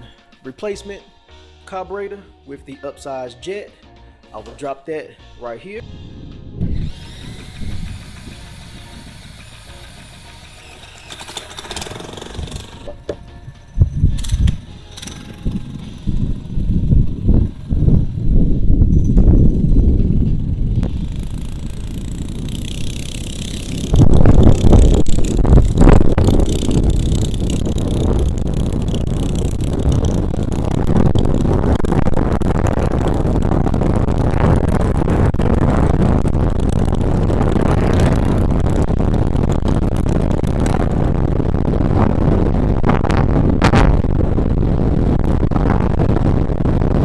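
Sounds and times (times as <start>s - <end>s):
small-engine bike running flat out: 6.7s - 42.3s.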